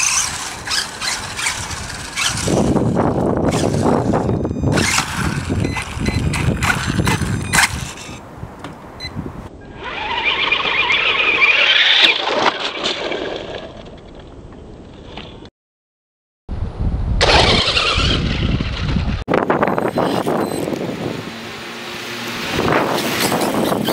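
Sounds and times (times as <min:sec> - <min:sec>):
rc car motor whine: 0:00.0 - 0:08.2, 0:17.2 - 0:18.8, 0:19.8 - 0:20.8
rc car wheel noise: 0:00.0 - 0:08.2, 0:17.2 - 0:20.8, 0:22.7 - 0:23.9.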